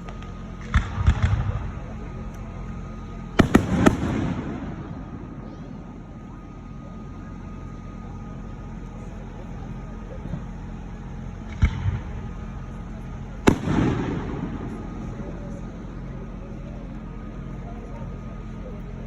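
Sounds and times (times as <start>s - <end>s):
fireworks banging: 0.0s - 6.4s, 11.2s - 16.1s.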